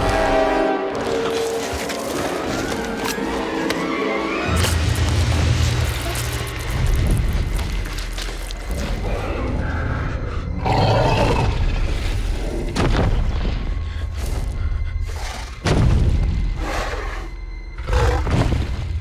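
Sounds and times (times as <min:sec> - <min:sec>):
music: 0:00.0 - 0:19.0
continuous low rumble: 0:04.5 - 0:16.6.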